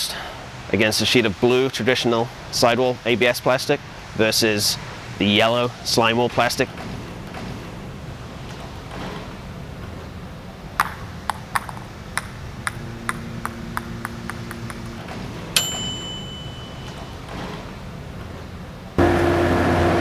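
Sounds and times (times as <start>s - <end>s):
sharp ringing ping: 15.6s - 17.3s.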